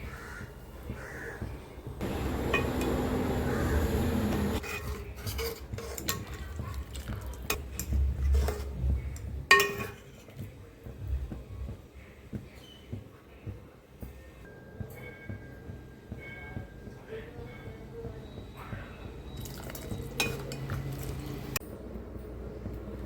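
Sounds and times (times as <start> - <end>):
spoon scraping a cooking pot: 4.3 - 10.4, 19.4 - 21.5.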